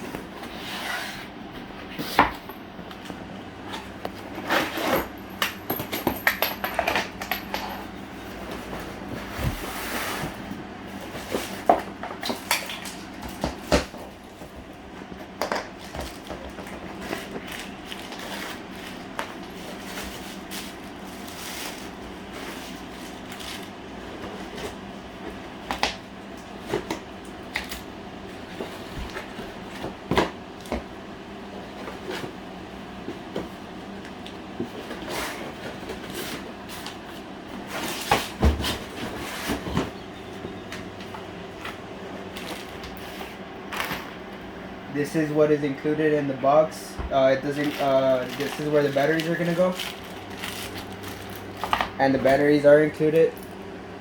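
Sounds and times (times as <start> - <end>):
steady low hum: 0.0 - 54.0
packaging knocks and rustles: 10.3 - 24.8, 47.0 - 52.5.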